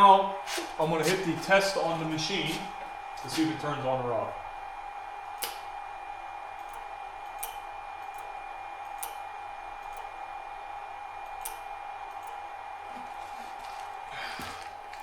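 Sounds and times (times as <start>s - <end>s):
steady high hum: 0.0s - 15.0s
solenoid valve clicking: 5.4s - 5.7s, 6.6s - 9.2s, 11.2s - 12.4s.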